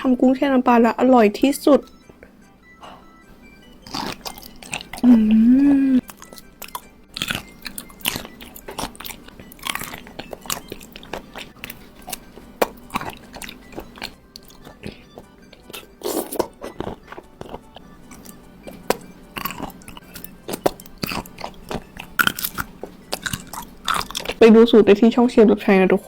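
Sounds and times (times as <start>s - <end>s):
wet chewing and crunching: 3.0s - 5.4s, 6.0s - 24.4s
person humming mmm: 4.4s - 6.2s.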